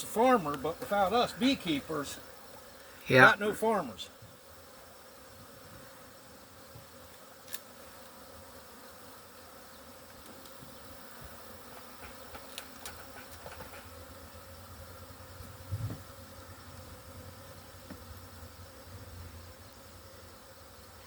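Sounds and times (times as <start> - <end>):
bees buzzing: 0.0 - 21.0.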